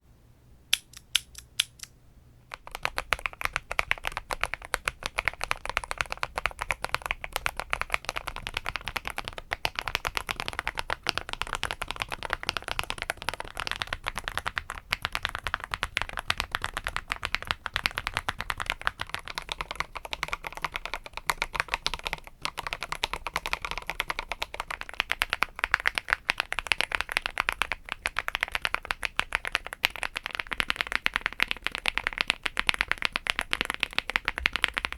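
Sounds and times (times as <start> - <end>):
mechanical keyboard typing: 2.5 - 34.9.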